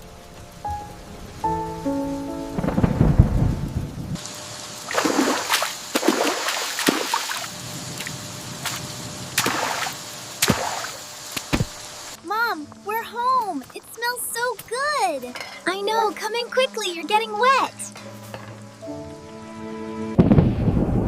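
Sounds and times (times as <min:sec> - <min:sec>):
heavy rain: 0:00.0 - 0:21.0
low thunder rumble: 0:01.2 - 0:04.2, 0:20.2 - 0:21.0
sharp thunder cracks: 0:02.5 - 0:04.2, 0:20.2 - 0:21.0.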